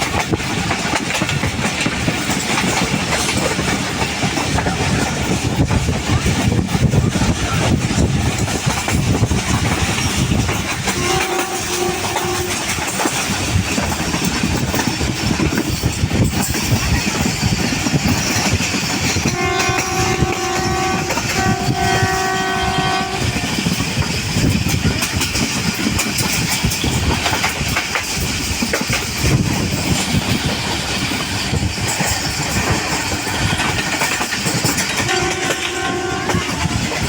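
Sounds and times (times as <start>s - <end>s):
train rumbling on rails: 0.0s - 37.0s
train horn blasts: 10.8s - 13.0s, 19.2s - 23.6s, 34.9s - 36.9s.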